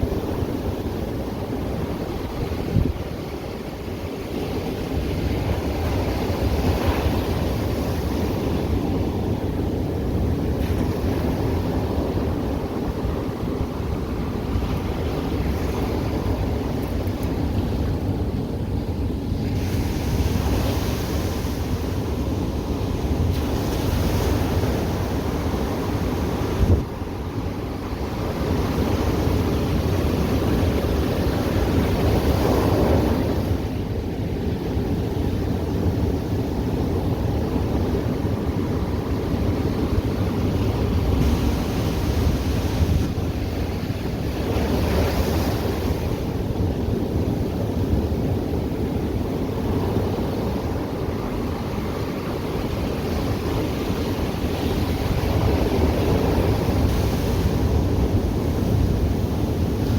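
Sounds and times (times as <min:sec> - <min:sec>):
wind buffeting microphone: 0:00.0 - 0:59.9
ocean surf breaking: 0:19.3 - 0:59.9.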